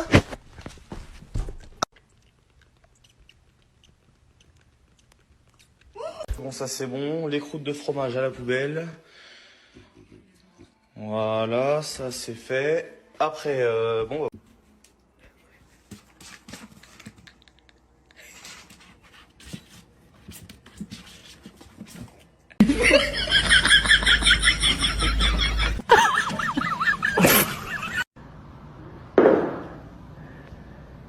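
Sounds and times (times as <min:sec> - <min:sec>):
person laughing hard: 0:22.6 - 0:28.0.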